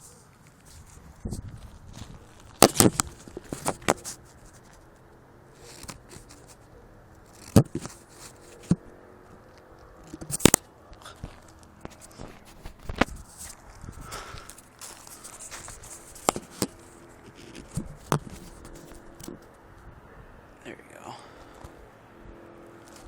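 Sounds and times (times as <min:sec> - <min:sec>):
sharp clicks and scrapes: 0:00.0 - 0:05.0, 0:05.6 - 0:19.6.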